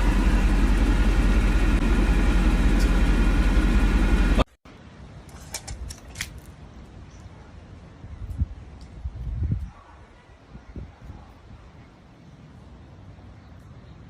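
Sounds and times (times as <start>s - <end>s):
vehicle engine drone: 0.0s - 4.5s.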